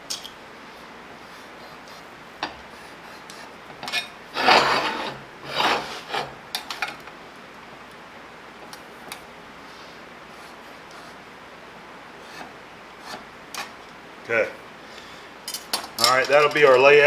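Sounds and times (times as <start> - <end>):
scriber scratching steel plate: 2.8 - 6.4.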